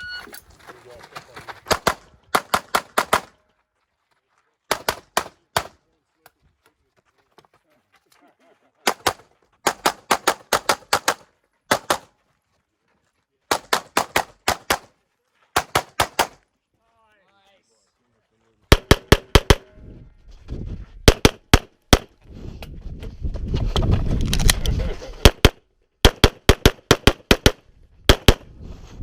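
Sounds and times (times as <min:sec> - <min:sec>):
rapid pistol fire: 0:04.7 - 0:05.8, 0:08.9 - 0:12.1, 0:13.5 - 0:14.9, 0:15.6 - 0:16.4, 0:18.7 - 0:19.6, 0:21.1 - 0:22.1, 0:25.2 - 0:28.5.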